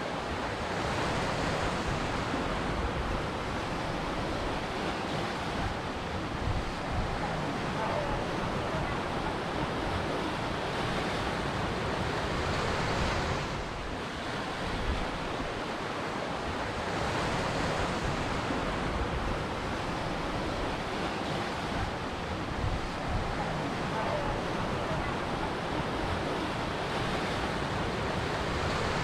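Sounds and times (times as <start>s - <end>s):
ocean waves breaking: 0.0s - 29.0s.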